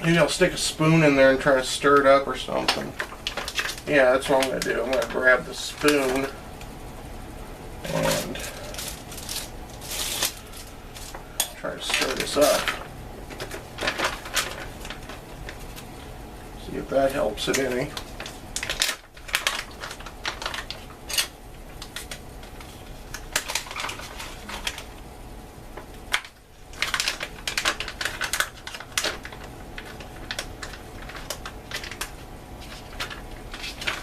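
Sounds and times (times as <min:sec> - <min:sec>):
plastic crinkling: 0:01.4 - 0:06.4, 0:07.9 - 0:16.2, 0:17.0 - 0:25.0, 0:26.0 - 0:34.0
spoon stirring in plastic bag: 0:02.6 - 0:06.3, 0:07.9 - 0:15.8, 0:17.1 - 0:24.9, 0:26.6 - 0:34.0.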